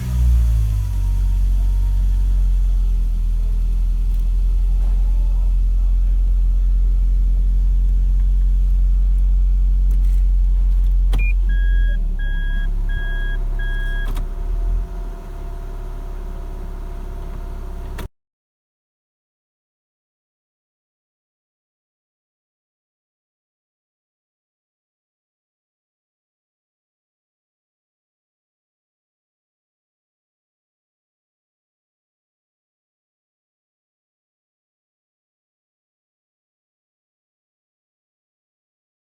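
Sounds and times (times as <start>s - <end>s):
engine idling rumble: 0.0s - 18.1s
short electronic beeps: 11.2s - 14.1s.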